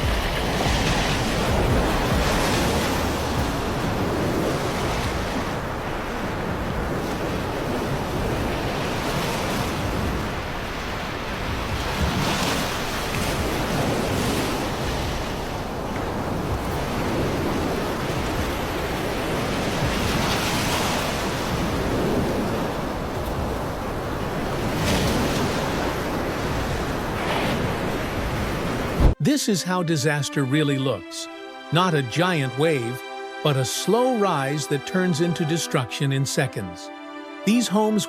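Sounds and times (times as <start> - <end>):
wind buffeting microphone: 0.0 - 29.2
floodwater rushing: 0.0 - 38.0.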